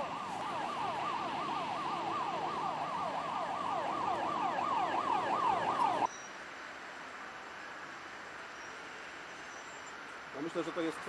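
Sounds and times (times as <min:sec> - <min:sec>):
siren yelping: 0:00.0 - 0:06.1.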